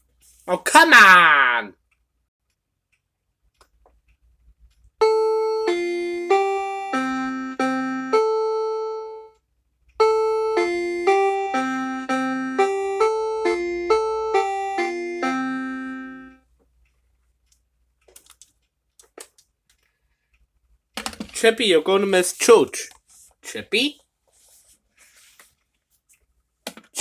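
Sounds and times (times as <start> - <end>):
piano-like keyboard tune: 5.0 - 9.3, 10.0 - 16.4.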